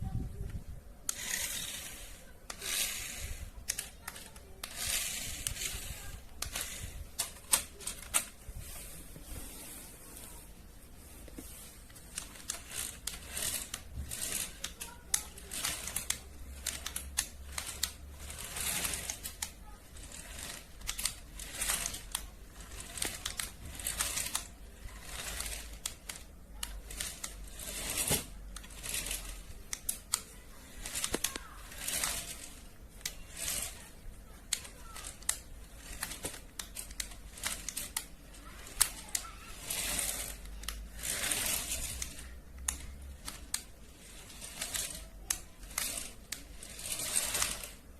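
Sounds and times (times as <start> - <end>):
toy packaging crinkling: 12.0 - 33.9
sharp packaging clicks: 12.0 - 47.8.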